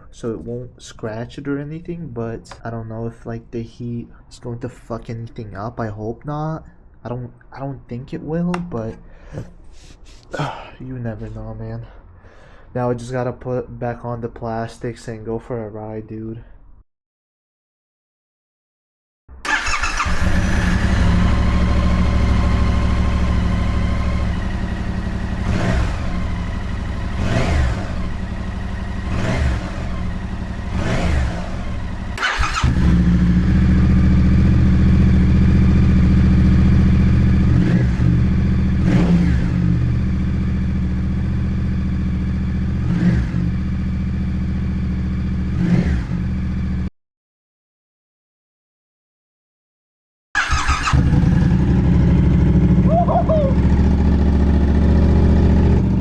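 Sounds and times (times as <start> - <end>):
motorcycle engine revving: 19.5 - 46.9, 50.4 - 56.0.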